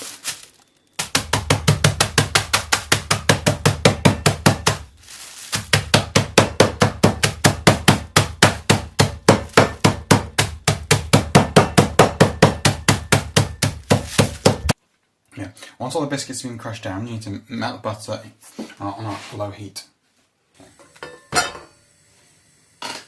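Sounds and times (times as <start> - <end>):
biscuits in a bag being pounded: 0.0 - 14.8.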